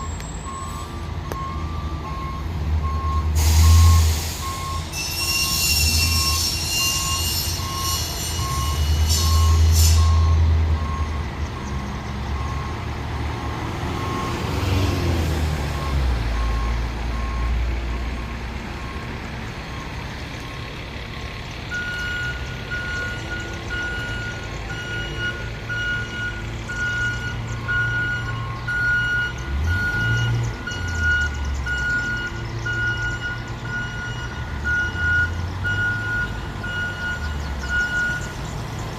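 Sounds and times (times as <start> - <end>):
reversing alarm beeping: 0.0 - 11.7, 12.3 - 14.6, 15.7 - 20.6, 21.7 - 38.4
loud hiss of air: 3.3 - 4.7
diesel engine running: 6.2 - 38.9.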